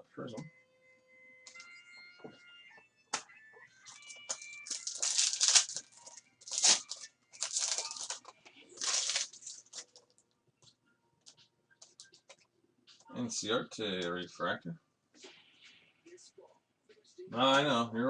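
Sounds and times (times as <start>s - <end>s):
cards rustling and swishing: 3.9s - 10.0s.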